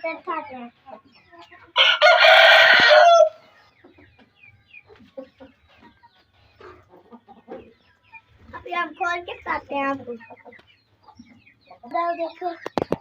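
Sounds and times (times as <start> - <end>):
rooster crowing: 1.8 - 3.4.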